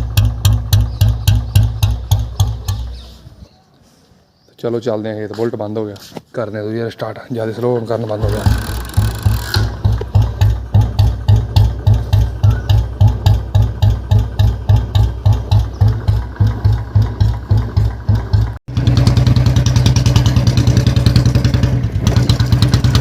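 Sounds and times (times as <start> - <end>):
motorcycle engine thumping: 0.0 - 3.0, 7.8 - 23.0.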